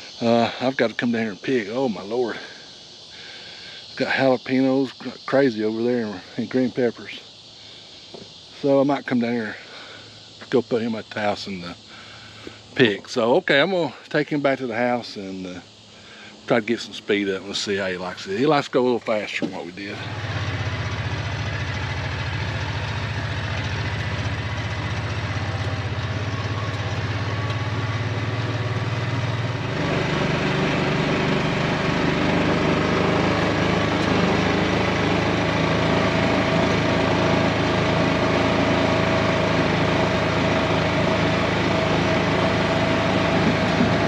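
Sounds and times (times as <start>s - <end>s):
farm vehicle engine running: 19.1s - 44.0s.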